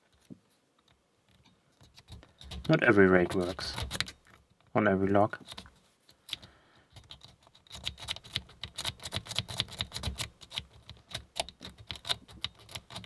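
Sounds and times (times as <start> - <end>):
lock pick raking padlock pins: 1.8 - 4.4, 6.3 - 13.0.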